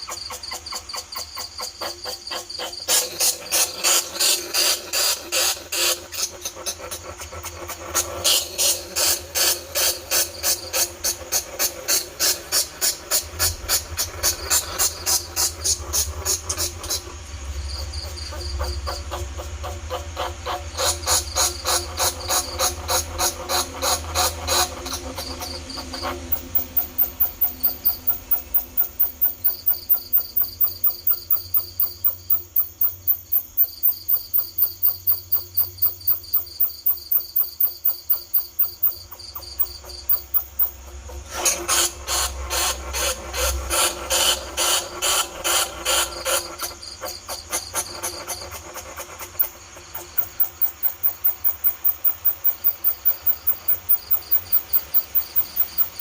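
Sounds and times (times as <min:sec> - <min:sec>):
rat squeaking: 0:17.8 - 0:40.8, 0:49.2 - 0:56.0.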